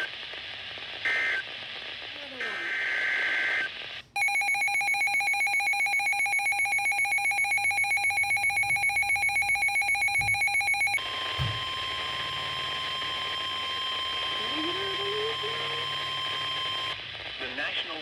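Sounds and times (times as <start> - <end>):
pulsing electronic ringing buzz: 4.2 - 17.0
steady single alarm tone: 4.2 - 17.0.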